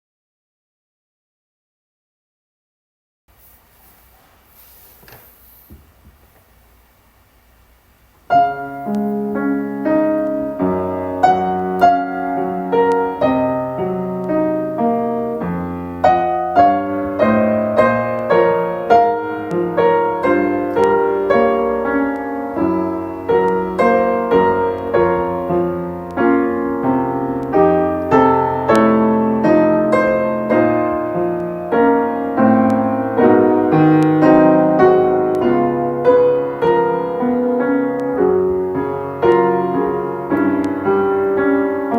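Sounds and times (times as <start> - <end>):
piano playing a song: 8.3 - 41.9.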